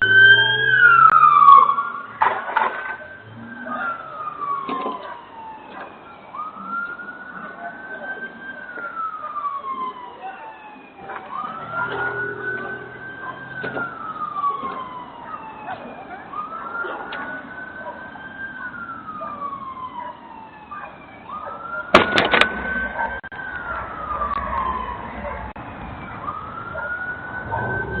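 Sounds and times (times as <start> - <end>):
police siren wailing: 0.0 - 28.0
sharp cracks: 21.9 - 22.5.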